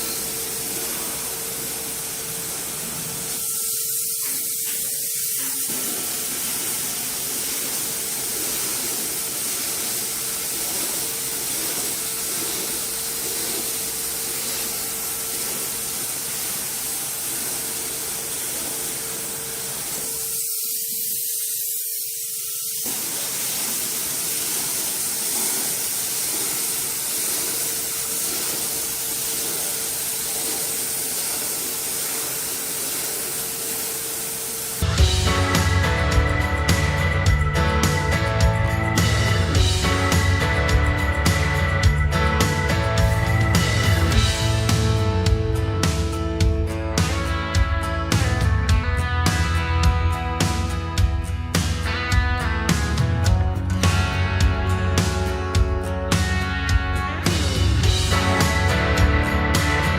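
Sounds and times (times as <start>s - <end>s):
spray gun hissing: 0.0s - 46.0s.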